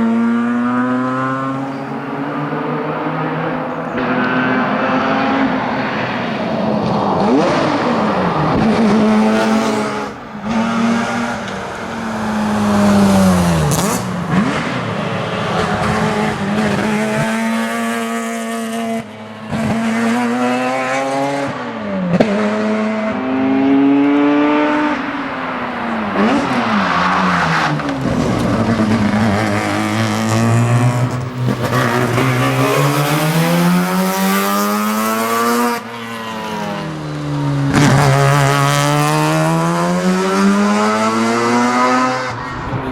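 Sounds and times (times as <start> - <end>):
racing engine revving: 0.0 - 42.9.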